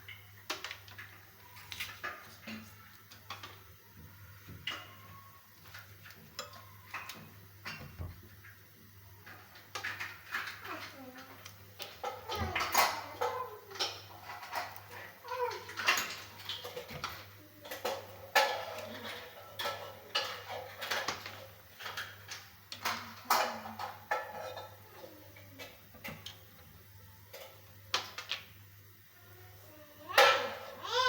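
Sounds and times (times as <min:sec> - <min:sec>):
dishes and utensils clinking: 0:09.3 - 0:26.4.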